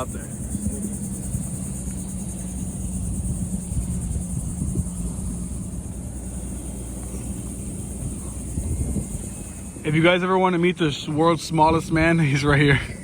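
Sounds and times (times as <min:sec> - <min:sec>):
boat motor running: 0:00.0 - 0:13.0
high hiss: 0:00.0 - 0:13.0.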